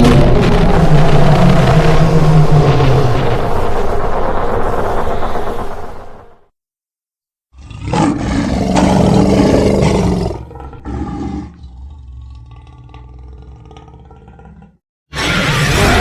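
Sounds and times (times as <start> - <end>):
dinosaur roar: 0.0 - 3.6, 7.6 - 16.0
low growl: 0.0 - 5.1, 7.6 - 14.8.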